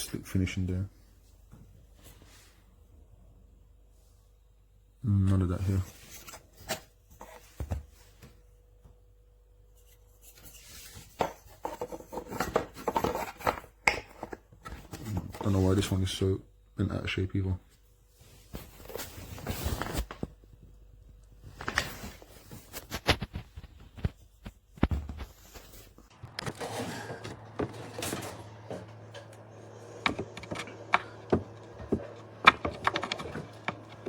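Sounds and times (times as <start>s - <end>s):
wooden parts clicking and knocking: 30.0s - 34.0s.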